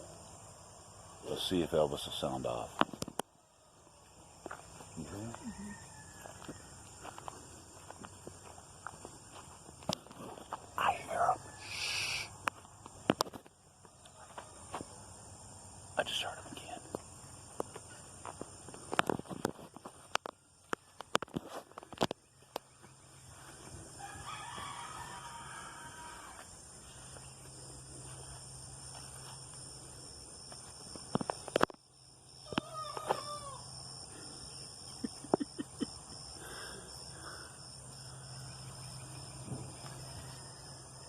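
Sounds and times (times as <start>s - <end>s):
insects chirring: 0.0s - 41.0s
young rooster crowing: 5.3s - 7.1s, 11.1s - 12.2s, 23.9s - 26.5s, 32.4s - 33.8s, 39.7s - 41.0s.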